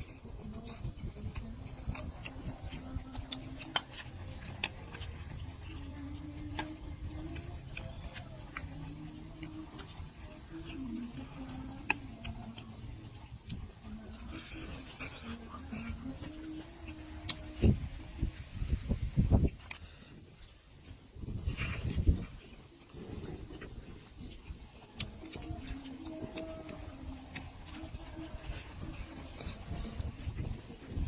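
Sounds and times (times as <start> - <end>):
high-pitched insect chorus: 0.0 - 31.0.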